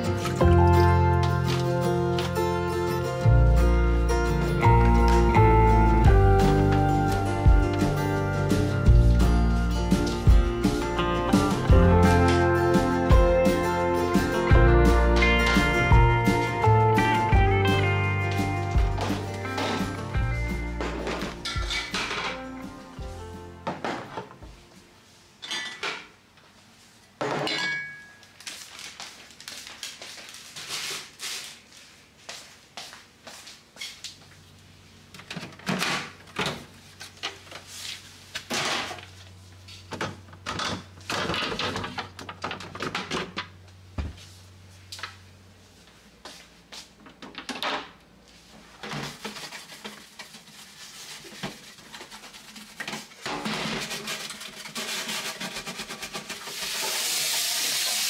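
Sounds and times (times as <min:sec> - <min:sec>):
containers and drawers clattering: 0:18.2 - 0:22.6, 0:40.0 - 0:43.5, 0:51.5 - 0:56.7.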